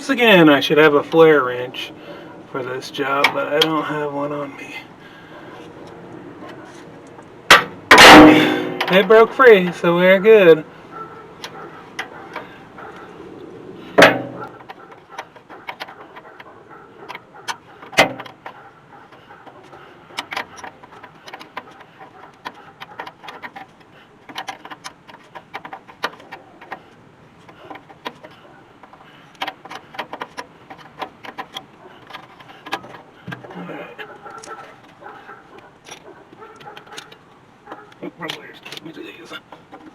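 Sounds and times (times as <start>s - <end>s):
sharp metal knocks: 7.5s - 9.3s, 14.0s - 16.3s, 17.1s - 18.6s.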